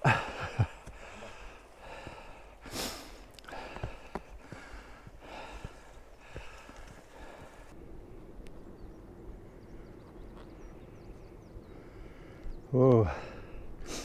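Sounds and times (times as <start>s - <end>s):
man panting heavily: 0.0s - 7.8s, 11.6s - 14.0s.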